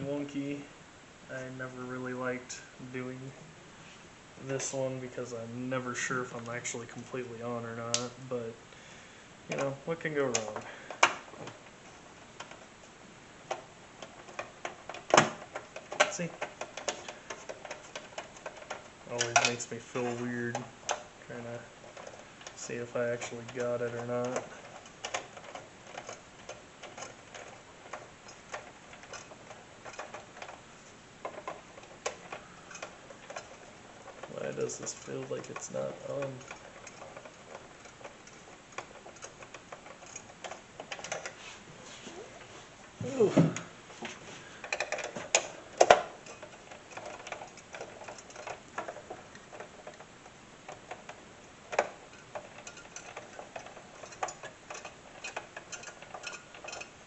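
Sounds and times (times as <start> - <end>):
clicks and knocks of cpu cooler: 9.5 - 12.8, 13.4 - 21.2, 21.9 - 41.4, 43.4 - 57.0.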